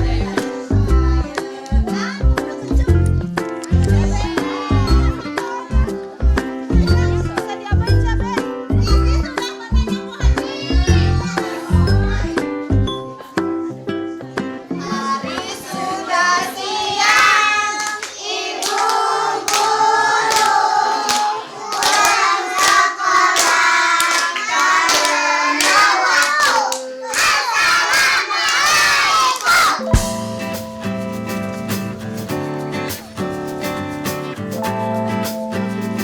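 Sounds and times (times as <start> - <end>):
children singing: 0.0 - 2.8, 3.9 - 5.8, 11.0 - 12.4, 14.7 - 30.0
children clapping: 17.0 - 30.0.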